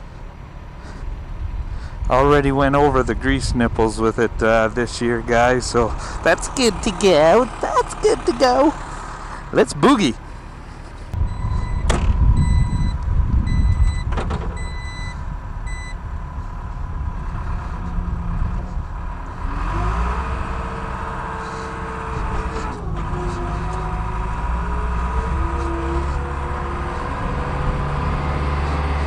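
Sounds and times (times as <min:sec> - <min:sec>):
diesel engine running: 0:00.0 - 0:29.0
electronic warning beeps: 0:11.2 - 0:16.0.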